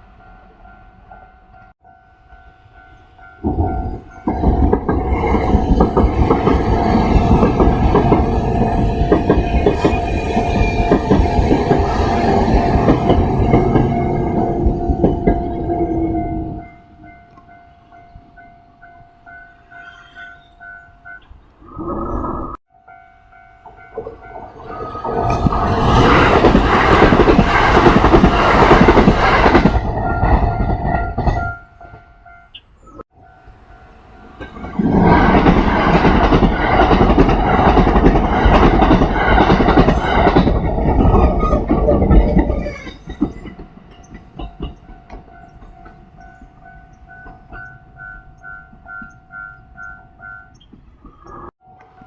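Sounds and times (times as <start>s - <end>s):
electric trains rumbling and clattering: 0.0s - 52.0s
level crossing alarm ringing: 5.6s - 21.3s.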